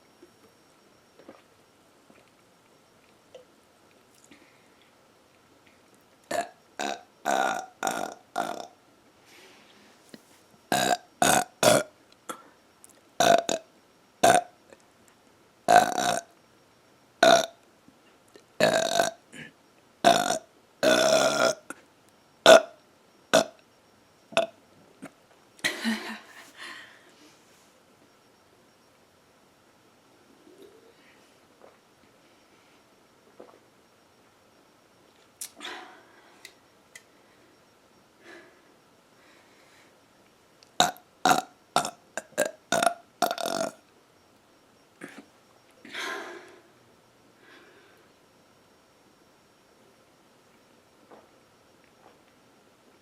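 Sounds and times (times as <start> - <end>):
woman burping: 10.7 - 12.4, 18.6 - 21.7.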